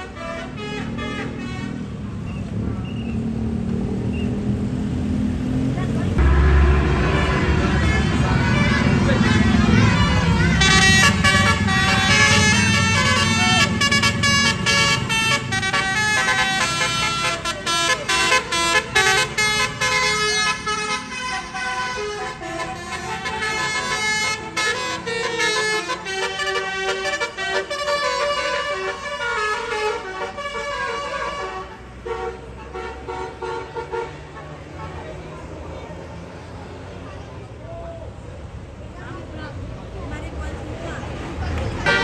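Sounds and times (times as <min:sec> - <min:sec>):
bus engine rumbling: 0:00.0 - 0:42.0
musical horn playing a tune: 0:06.2 - 0:34.2.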